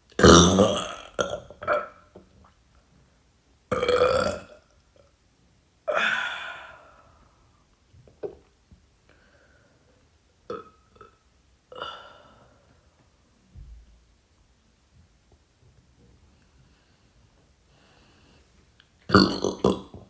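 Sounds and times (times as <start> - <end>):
woman burping: 0.2 - 2.0, 5.9 - 6.8, 19.1 - 20.0.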